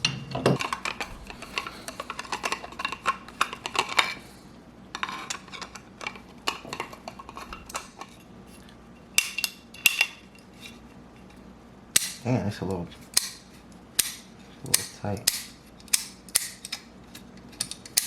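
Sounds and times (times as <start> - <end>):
small metal parts clicking: 14.0 - 18.0.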